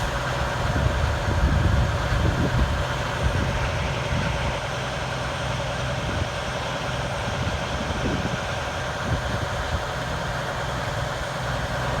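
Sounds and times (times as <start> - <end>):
truck engine idling: 0.0 - 12.0.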